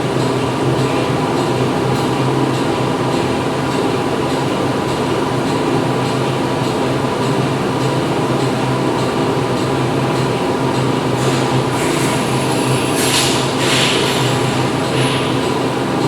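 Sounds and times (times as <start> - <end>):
factory machinery running: 0.0 - 16.0.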